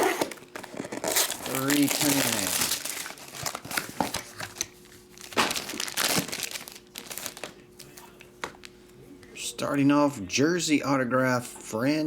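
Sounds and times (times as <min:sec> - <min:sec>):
plastic wrapping crinkling and tearing: 0:00.0 - 0:08.1.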